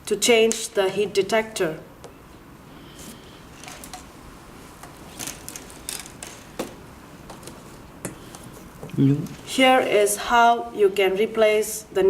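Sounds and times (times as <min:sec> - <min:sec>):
low steady background noise: 0:00.0 - 0:12.0
tools and metal parts clicking: 0:05.2 - 0:06.4.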